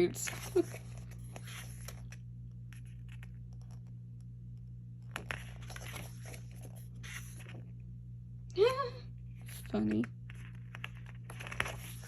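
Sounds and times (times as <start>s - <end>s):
paper pages rustling: 0.0s - 3.9s, 5.1s - 7.8s, 9.4s - 12.0s
steady low hum: 0.0s - 12.0s.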